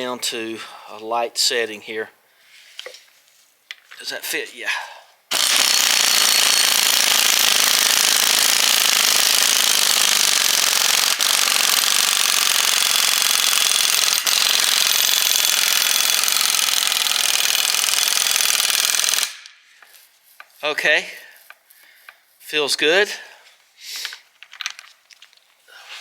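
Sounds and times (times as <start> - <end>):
impact wrench hammering: 5.3 - 19.9.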